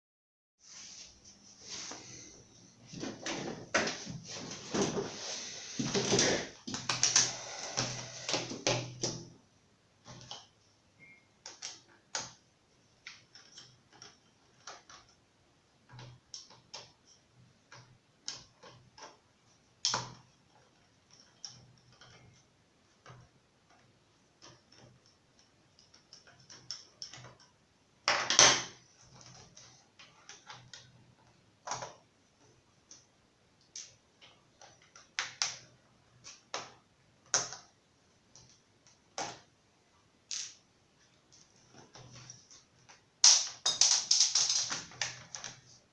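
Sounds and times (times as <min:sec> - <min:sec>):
tools clicking on laptop parts: 0:11.4 - 0:12.4, 0:13.0 - 0:15.2, 0:15.8 - 0:19.2, 0:19.8 - 0:22.4, 0:23.0 - 0:27.6, 0:32.8 - 0:39.5.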